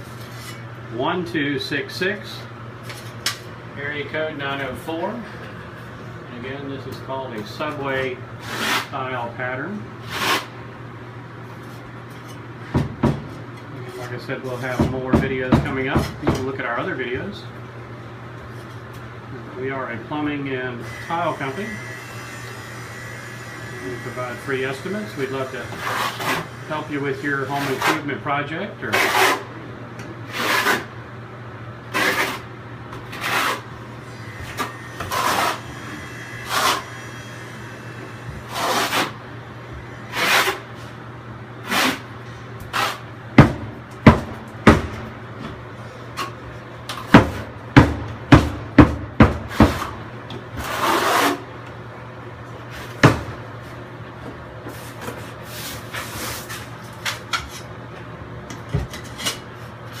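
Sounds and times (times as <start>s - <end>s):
scraping on wall tile: 8.4s - 8.9s, 10.1s - 10.5s, 25.6s - 26.6s, 27.5s - 28.1s, 28.9s - 29.5s, 30.3s - 30.9s, 31.9s - 32.5s, 33.1s - 33.7s, 34.5s - 35.8s, 36.4s - 36.9s, 38.4s - 39.2s, 40.1s - 40.6s, 41.6s - 42.1s, 42.7s - 43.0s, 50.6s - 51.4s, 54.7s - 57.7s.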